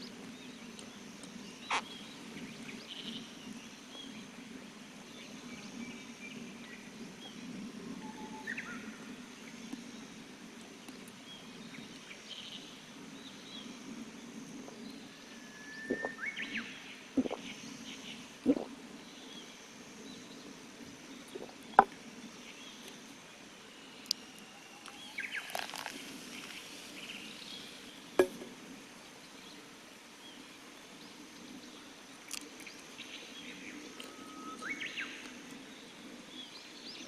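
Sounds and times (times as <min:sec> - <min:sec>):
campfire rumbling: 0:18.4 - 0:19.0, 0:21.2 - 0:21.9, 0:24.1 - 0:29.0
birds chirping faintly: 0:21.1 - 0:37.0
fire cracking: 0:24.8 - 0:28.4.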